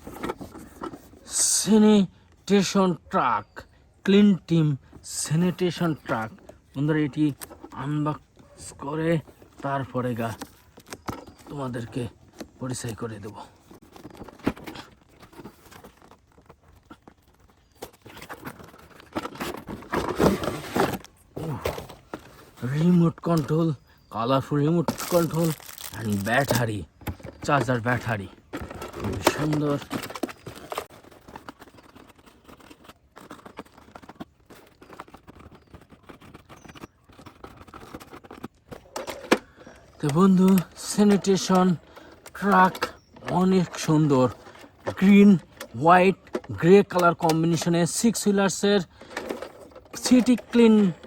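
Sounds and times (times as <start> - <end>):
packaging rustling: 9.0 - 47.7
cardboard and plastic tearing: 9.4 - 23.8, 24.6 - 47.5.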